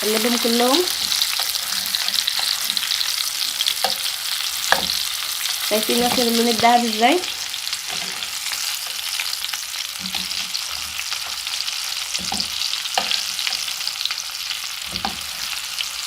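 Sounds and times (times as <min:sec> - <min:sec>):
cutlets sizzling in oil: 0:00.0 - 0:16.0.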